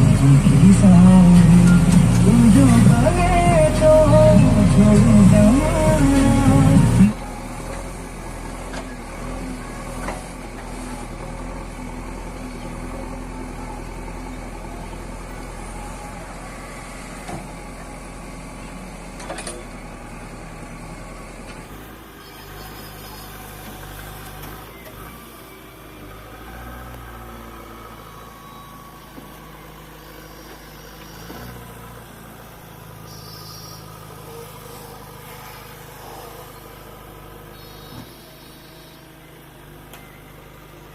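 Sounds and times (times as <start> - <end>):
diesel engine running: 0.0 - 40.9.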